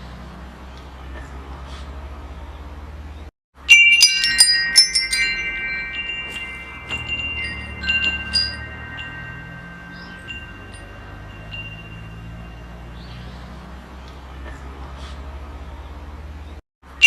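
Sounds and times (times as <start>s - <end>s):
wind chimes ringing: 3.6s - 13.7s.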